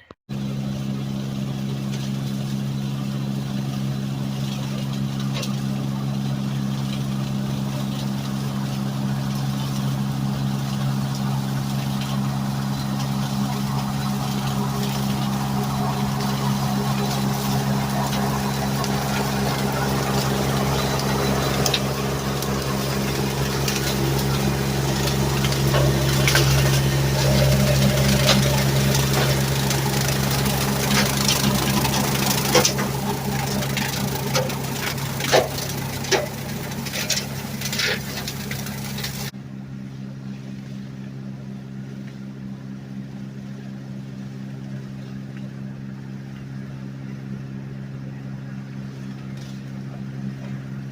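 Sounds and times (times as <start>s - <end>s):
tractor engine running: 0.0s - 44.9s.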